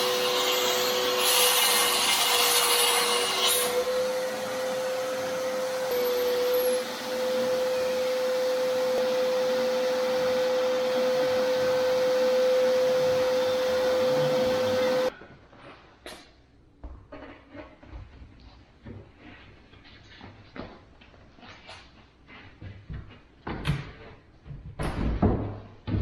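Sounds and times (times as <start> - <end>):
power saw cutting: 0.0 - 15.1.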